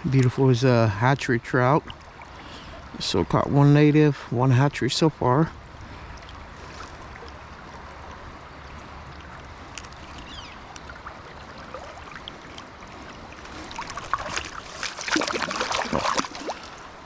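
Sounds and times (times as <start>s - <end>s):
river water rushing: 5.6s - 17.0s
splashing and knocks: 13.4s - 16.7s.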